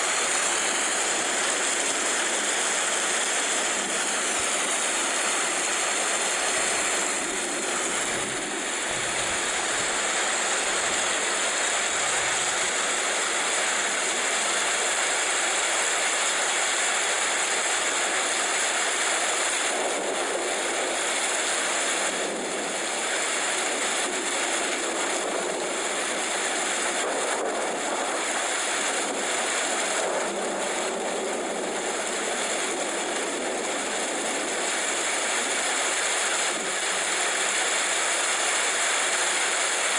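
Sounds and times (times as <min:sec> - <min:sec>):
steady rain falling: 0:04.3 - 0:13.2.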